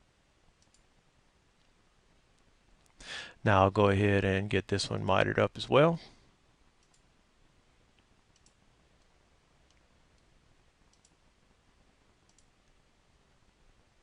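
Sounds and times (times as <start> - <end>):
computer mouse clicks: 0.6 - 0.9, 6.8 - 7.1, 8.3 - 10.3, 10.9 - 11.2, 12.2 - 12.8.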